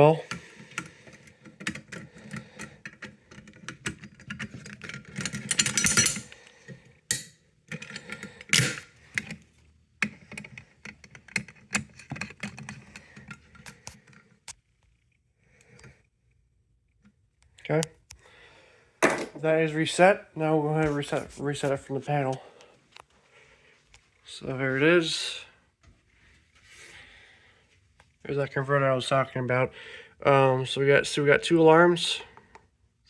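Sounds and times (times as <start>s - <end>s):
keys jangling: 4.1s - 6.4s.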